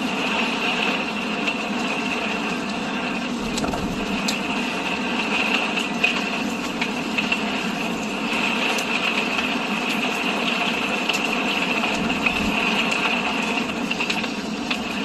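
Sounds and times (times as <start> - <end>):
hail falling: 0.0 - 15.0.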